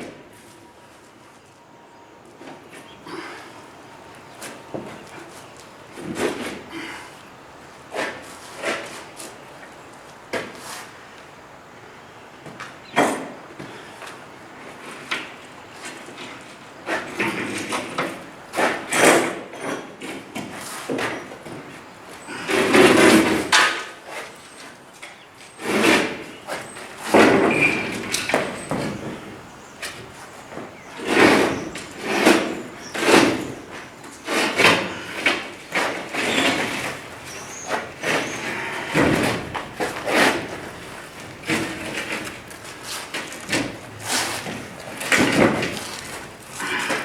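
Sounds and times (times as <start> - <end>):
floor panels knocking and scraping: 25.6 - 47.0.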